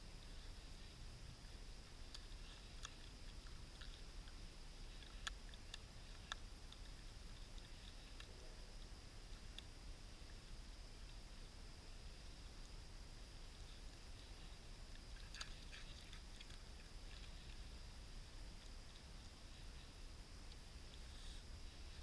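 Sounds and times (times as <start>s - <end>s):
faint steady hiss: 0.0s - 22.0s
animal chewing food: 1.4s - 10.4s, 13.6s - 19.9s.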